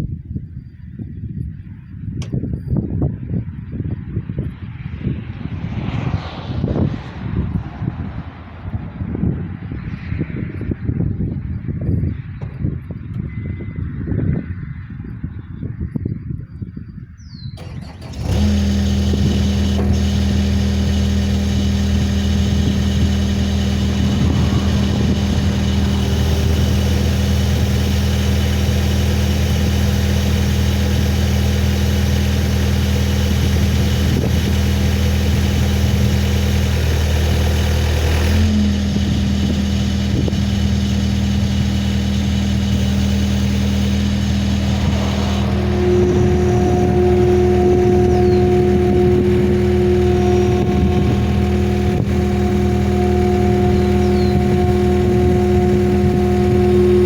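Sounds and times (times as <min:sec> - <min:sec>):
high steady whine: 0:17.6 - 0:57.0
skid steer engine running: 0:17.6 - 0:57.0.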